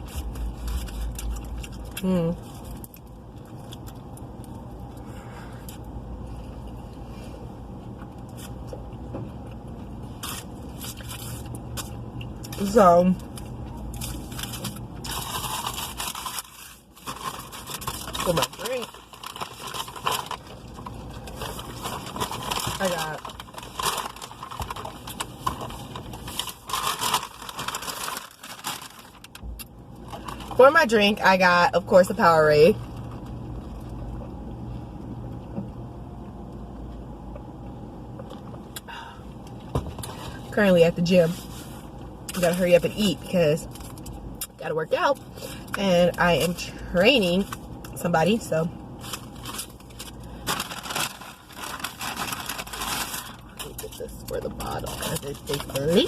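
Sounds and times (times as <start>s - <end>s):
low car cabin hum: 0.0s - 56.0s
wrapper crinkling: 10.2s - 29.4s, 49.0s - 56.0s.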